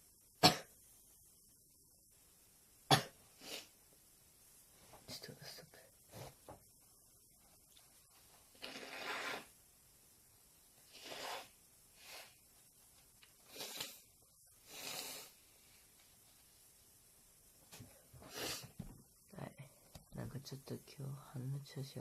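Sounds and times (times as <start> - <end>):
person sniffing: 3.4 - 3.8, 8.6 - 9.5, 10.9 - 12.4, 13.4 - 15.4, 18.2 - 18.8.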